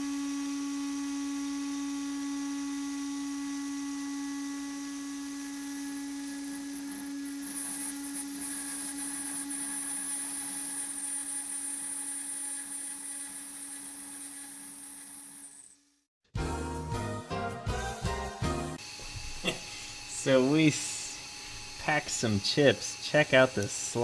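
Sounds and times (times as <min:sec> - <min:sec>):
spindle milling aluminum: 0:00.1 - 0:15.8, 0:18.8 - 0:24.0.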